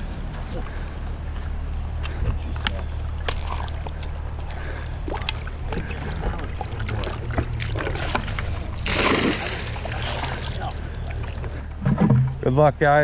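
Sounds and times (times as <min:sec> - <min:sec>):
loud water splash: 0:08.8 - 0:10.8.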